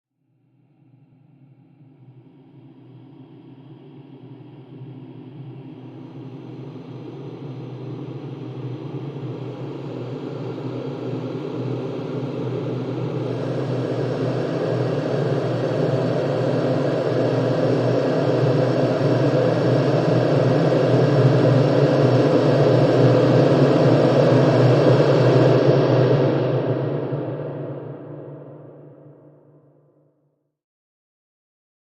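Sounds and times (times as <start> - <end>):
low rumbling drone: 12.8 - 29.1.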